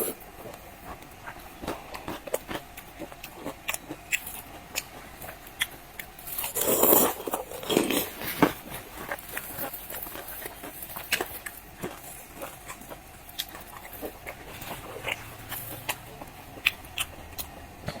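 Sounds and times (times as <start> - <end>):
chewing crunchy food: 0.0 - 18.0.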